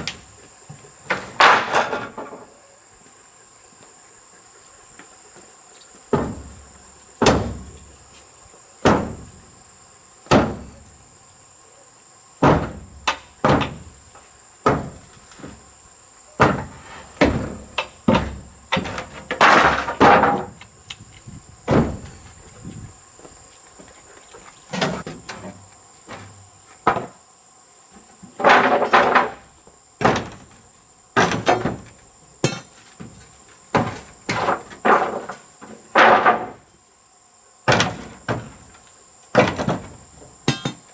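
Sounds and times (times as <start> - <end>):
knocks from building work: 6.1 - 6.6, 7.2 - 7.8, 8.8 - 9.3, 10.3 - 10.8, 12.4 - 13.9, 14.6 - 15.6, 16.4 - 20.6, 21.7 - 22.2, 30.0 - 30.6, 31.2 - 36.6, 37.7 - 38.6, 39.3 - 40.9.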